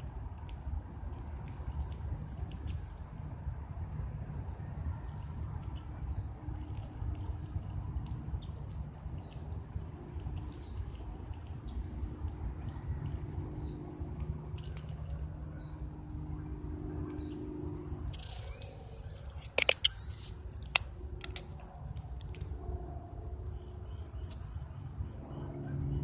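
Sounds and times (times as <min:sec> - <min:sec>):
steady low rumble: 0:00.0 - 0:26.0
squirrel squeaky chirps: 0:18.2 - 0:20.8.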